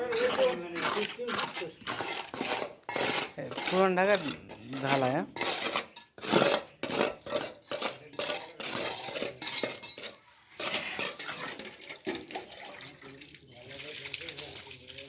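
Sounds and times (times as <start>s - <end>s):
metal tools scraping concrete: 0.0s - 15.0s.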